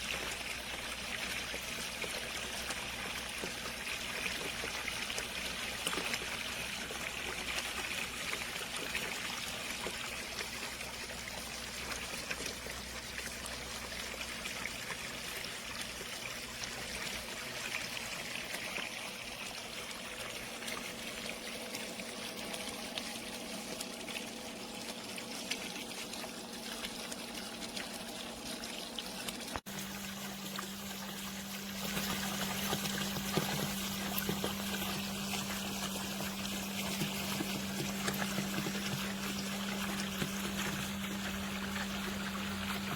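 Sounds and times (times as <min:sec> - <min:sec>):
water trickling and splashing: 0:00.0 - 0:42.9.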